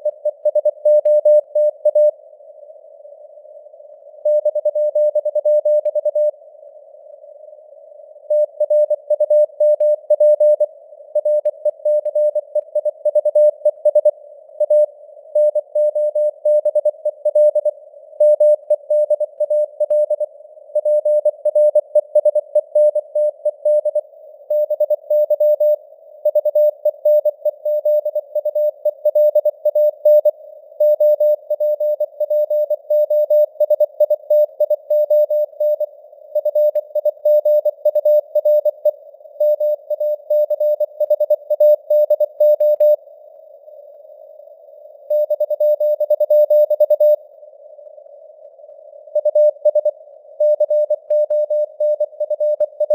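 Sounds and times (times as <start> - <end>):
morse code beeps: 20.8 - 43.0, 45.1 - 47.2, 49.2 - 52.9.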